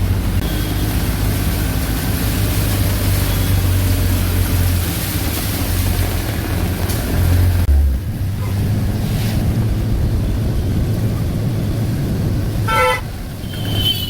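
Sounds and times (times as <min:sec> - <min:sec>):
auto-rickshaw engine running: 0:00.0 - 0:14.0
water rushing: 0:00.0 - 0:14.0
wind buffeting microphone: 0:07.5 - 0:13.8.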